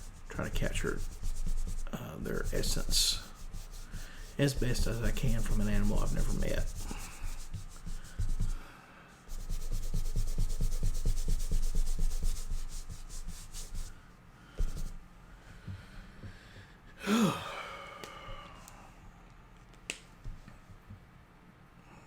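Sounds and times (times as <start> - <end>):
drawing tool scratching: 0.0 - 8.6, 9.3 - 13.9.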